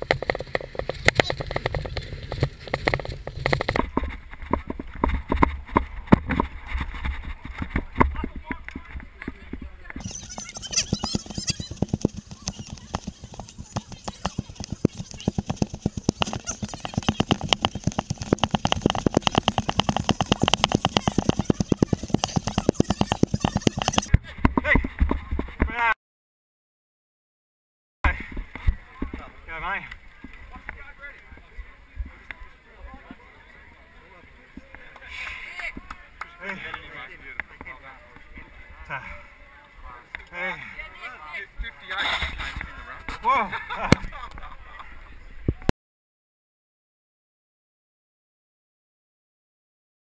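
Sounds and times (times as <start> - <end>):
bike rattling and clicking: 0.0 - 24.1
mountain bike rolling on trail: 0.0 - 24.2.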